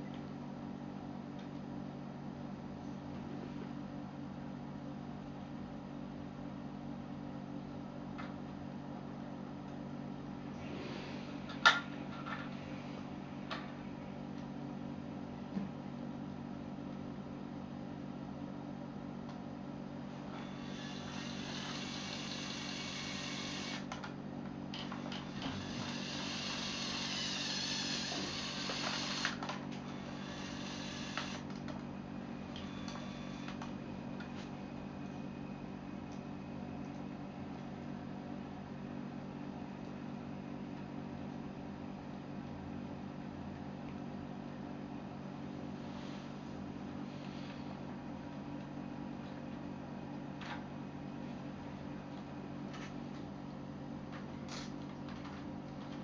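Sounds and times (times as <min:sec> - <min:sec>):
steady low hum: 0:00.0 - 0:56.0
small electric motor whirring: 0:20.4 - 0:23.9, 0:24.9 - 0:31.6, 0:32.6 - 0:33.7.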